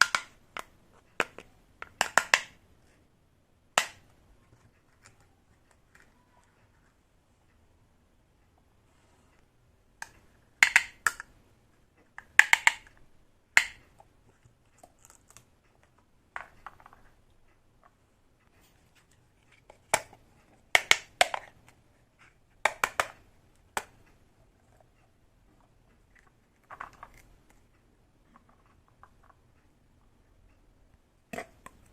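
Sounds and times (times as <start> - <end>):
plastic toy pieces clicking: 0.0 - 2.6, 10.0 - 11.3, 12.2 - 13.0, 13.6 - 13.9, 20.8 - 21.8, 22.6 - 23.2.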